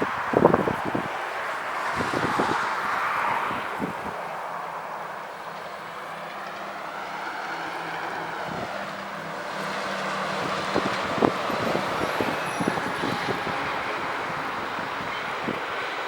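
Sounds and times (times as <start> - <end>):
wind on microphone: 0.0 - 4.4, 8.2 - 8.9, 9.5 - 16.0
distant jet engines: 0.0 - 16.0.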